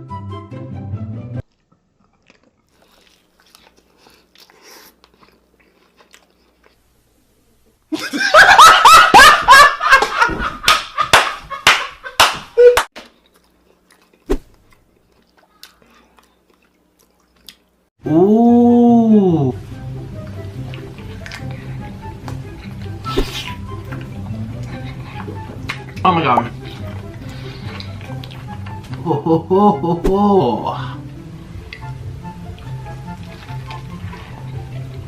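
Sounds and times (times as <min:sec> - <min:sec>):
background music: 0:00.0 - 0:01.4, 0:18.0 - 0:35.0
chewing mouth sounds: 0:01.4 - 0:06.8, 0:13.0 - 0:17.8, 0:20.2 - 0:29.0, 0:31.6 - 0:35.0
loud laughter: 0:08.0 - 0:12.8.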